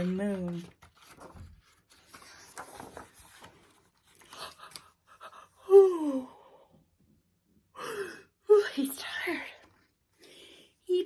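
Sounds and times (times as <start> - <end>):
woman sighing: 5.5 - 6.7.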